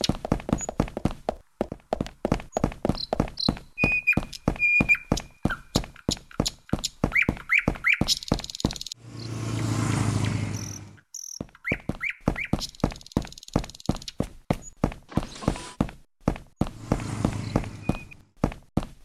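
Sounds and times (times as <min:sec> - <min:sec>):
bird-like chirps: 0:02.5 - 0:09.6, 0:10.2 - 0:15.5, 0:17.4 - 0:18.2
rushing noise with low hum: 0:16.6 - 0:18.2.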